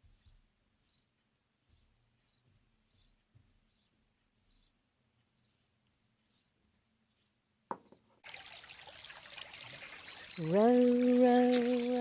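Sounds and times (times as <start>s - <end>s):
faint high bird chirps: 0.0s - 8.2s, 9.6s - 11.0s
running water: 8.2s - 12.0s.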